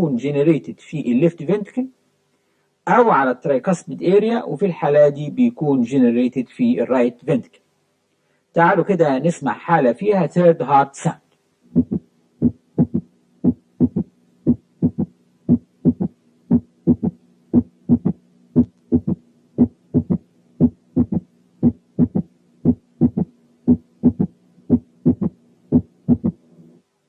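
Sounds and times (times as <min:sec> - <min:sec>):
steady low hum: 0:00.0 - 0:27.0
heartbeat through stethoscope: 0:11.8 - 0:26.4.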